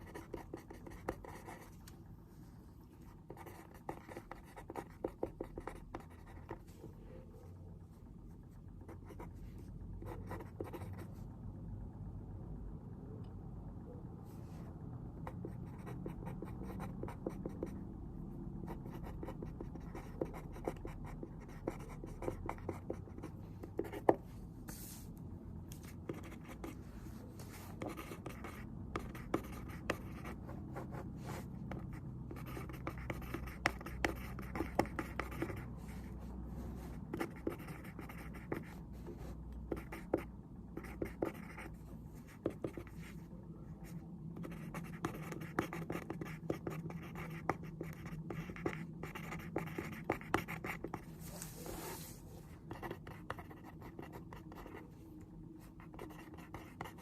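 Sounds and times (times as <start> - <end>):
pen scratching on paper: 0.0 - 1.8, 3.0 - 6.8, 8.8 - 9.4, 10.0 - 11.0, 15.2 - 17.8, 18.6 - 25.0, 25.8 - 26.8, 27.4 - 43.2, 43.9 - 55.0, 55.6 - 57.0
low room hum: 0.0 - 57.0.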